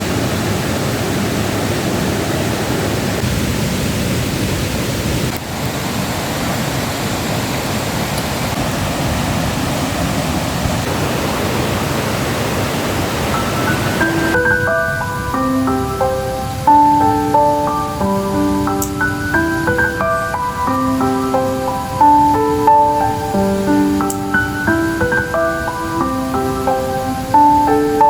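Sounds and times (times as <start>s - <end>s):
rushing water: 0.0s - 28.0s
melody of pitched notes: 13.3s - 28.0s.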